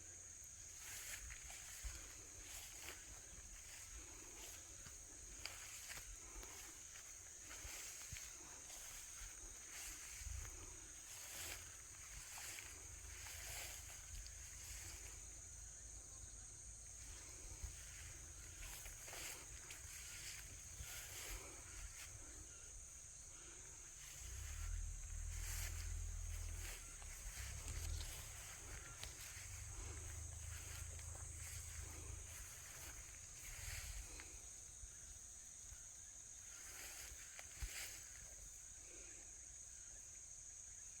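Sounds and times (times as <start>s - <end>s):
insects buzzing: 0.0s - 41.0s
low fluttering rumble: 24.1s - 34.3s.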